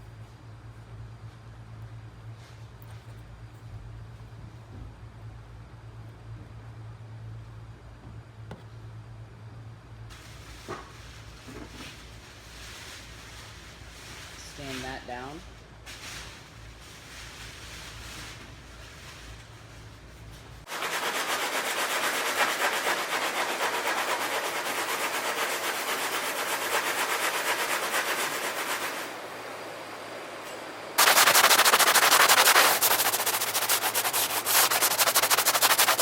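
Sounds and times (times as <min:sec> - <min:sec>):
sanding body filler: 0:20.7 - 0:29.2, 0:31.0 - 0:36.0.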